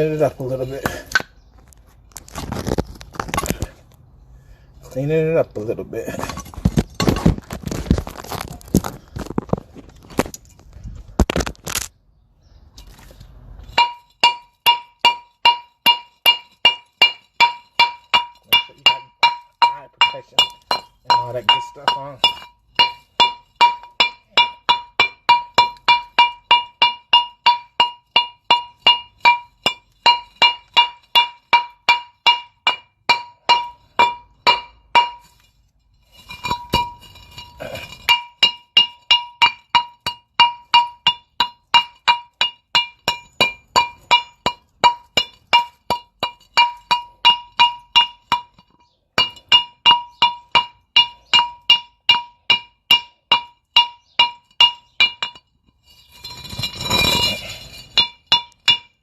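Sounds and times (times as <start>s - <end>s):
hammer striking steel hub: 13.6s - 59.0s.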